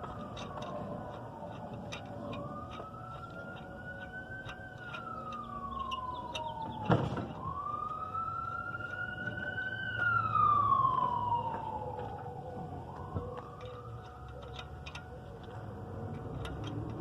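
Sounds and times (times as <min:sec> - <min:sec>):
emergency vehicle siren wailing: 0:00.0 - 0:17.0.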